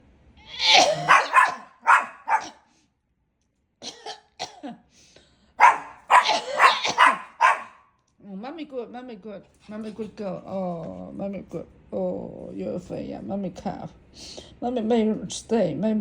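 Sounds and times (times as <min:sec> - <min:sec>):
woman coughing: 0:00.6 - 0:02.5, 0:03.8 - 0:04.8, 0:05.6 - 0:07.5.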